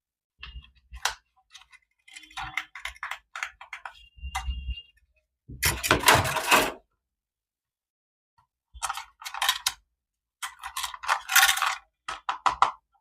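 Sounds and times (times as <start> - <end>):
packaging clicks and rattles: 0.9 - 4.5, 10.4 - 12.9.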